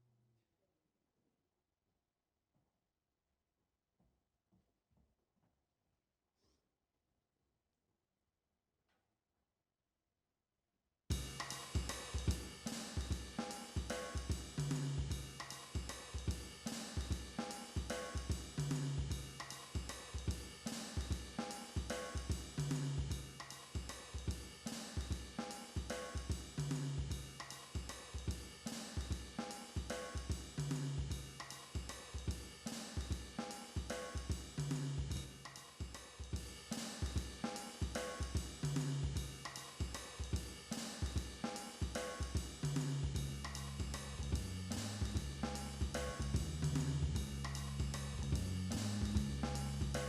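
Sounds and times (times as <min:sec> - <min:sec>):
drum beat: 0:11.1 - 0:50.0.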